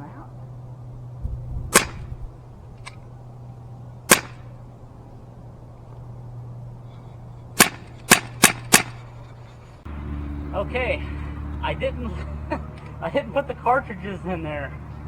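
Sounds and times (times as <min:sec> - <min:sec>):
air pistol pops: 0:01.7 - 0:02.2, 0:04.1 - 0:04.5, 0:07.6 - 0:09.0.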